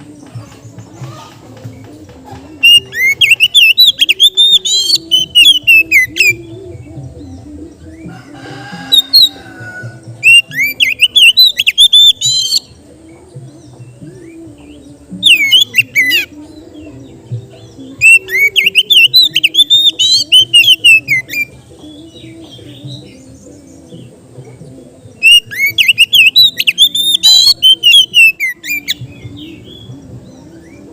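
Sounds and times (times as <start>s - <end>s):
bird whistling and trilling: 2.6s - 8.0s, 8.6s - 12.8s, 13.6s - 17.1s, 17.9s - 23.2s, 25.2s - 30.9s.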